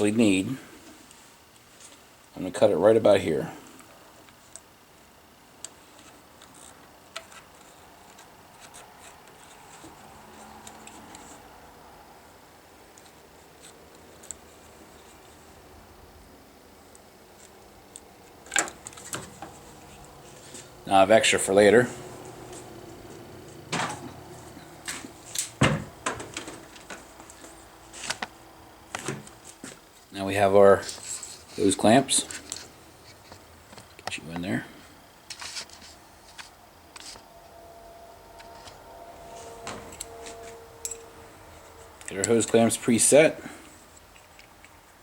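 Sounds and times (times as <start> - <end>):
tools and parts clattering: 23.7 - 28.3.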